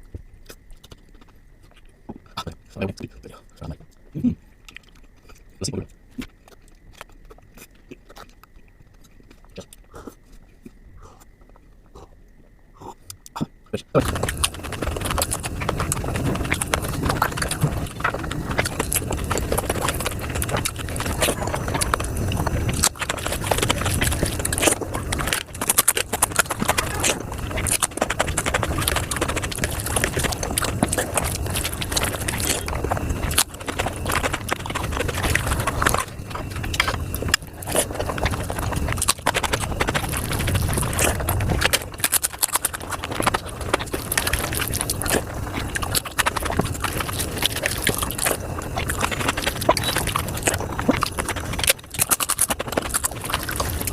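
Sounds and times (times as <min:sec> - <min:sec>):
sped-up chewing and mouth clicks: 0:00.0 - 0:53.9.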